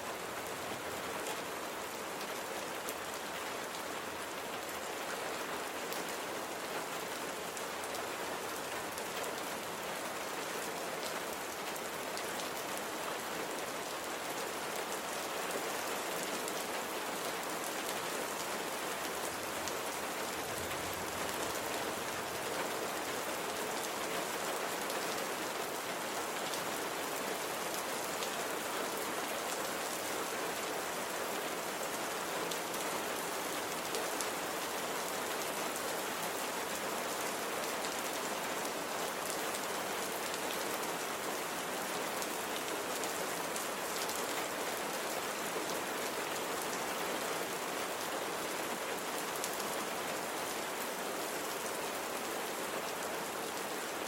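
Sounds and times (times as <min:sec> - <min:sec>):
rain on a hard surface: 0:00.0 - 0:54.0.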